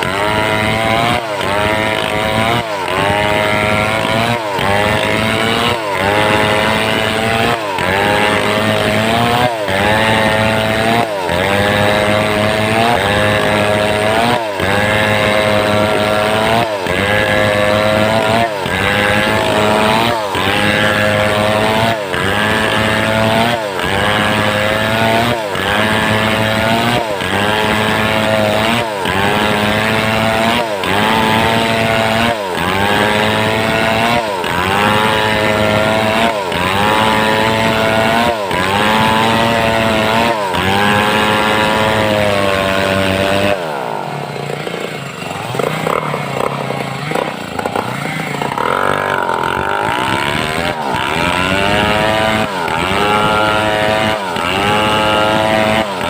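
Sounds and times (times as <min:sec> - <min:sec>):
chainsaw cutting log: 0:00.0 - 0:56.0.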